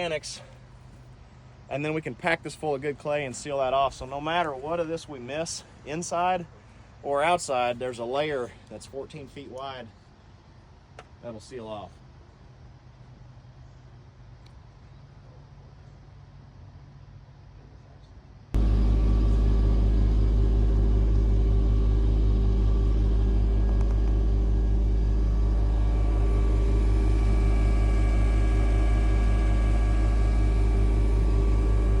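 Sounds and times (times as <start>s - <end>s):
heavy diesel engine rumbling: 18.6s - 32.0s.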